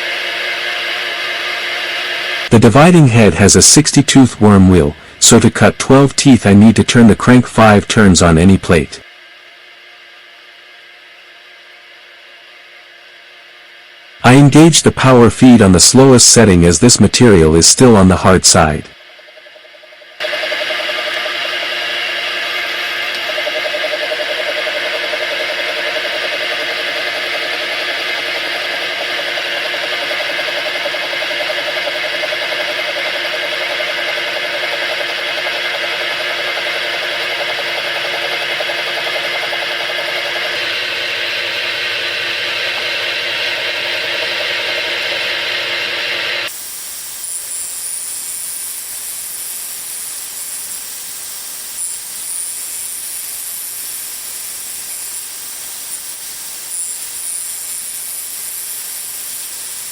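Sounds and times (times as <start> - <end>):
milling machine cutting steel: 20.2 - 59.9
high hiss: 45.6 - 59.9.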